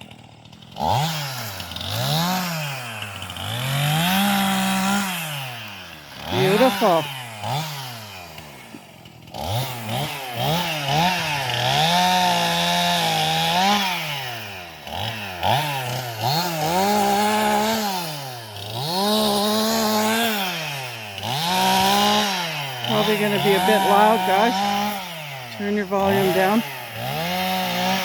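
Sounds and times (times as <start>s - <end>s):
chainsaw revving: 0.0s - 28.0s.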